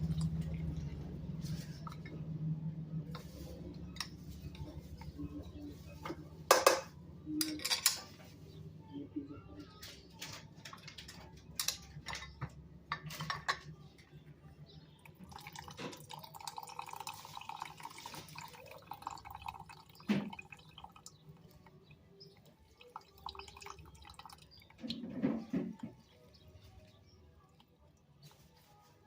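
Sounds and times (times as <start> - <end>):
juice trickling into a glass: 15.0 - 26.2.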